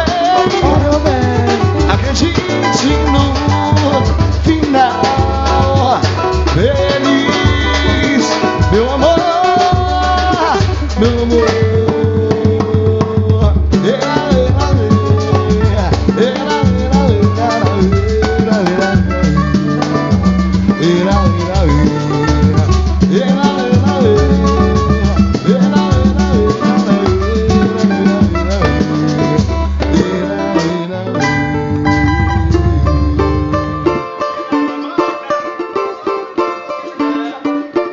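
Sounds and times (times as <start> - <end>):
samba drums and percussion: 0.0 - 35.9
melodic lines: 31.0 - 35.0.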